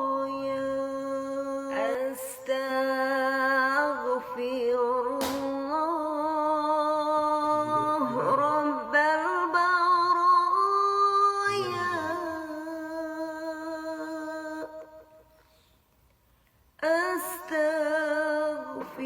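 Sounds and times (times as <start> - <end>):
person chanting wavering notes: 7.5 - 8.6.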